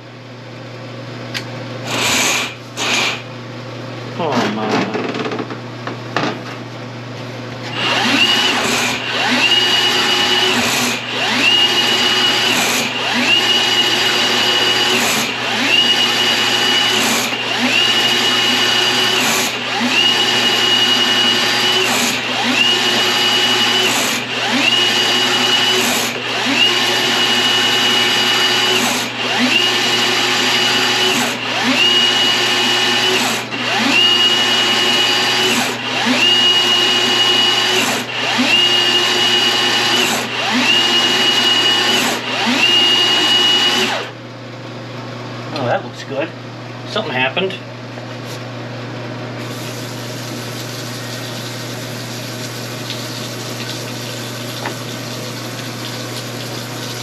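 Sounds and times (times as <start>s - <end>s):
drain machine motor spinning: 7.6s - 44.1s, 49.3s - 57.0s.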